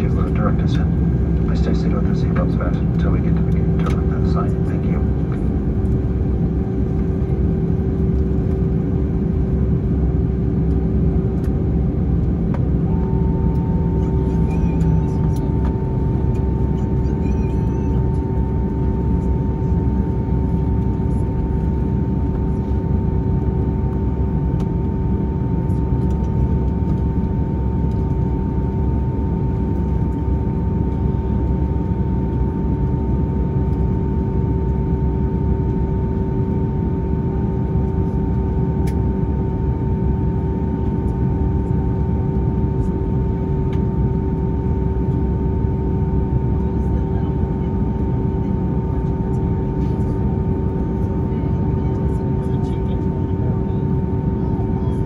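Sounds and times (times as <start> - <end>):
jet engines idling rumble: 0.0 - 55.0.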